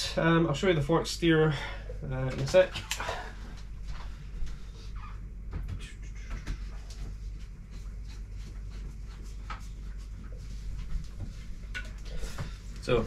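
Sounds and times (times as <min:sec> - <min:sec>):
low hum: 0:00.0 - 0:13.0.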